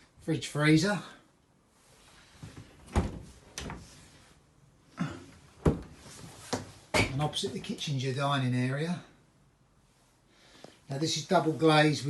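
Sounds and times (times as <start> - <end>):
fridge doors knocking and thudding: 2.9 - 3.8, 5.6 - 6.0.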